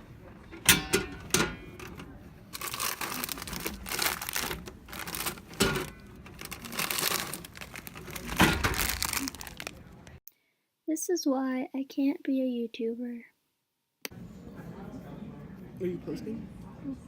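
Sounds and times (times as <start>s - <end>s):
plastic crinkling and rustling: 1.8s - 10.2s.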